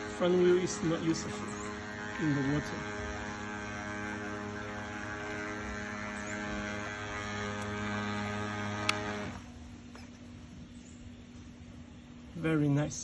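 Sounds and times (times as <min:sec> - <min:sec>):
small electric motor humming: 0:00.0 - 0:10.3.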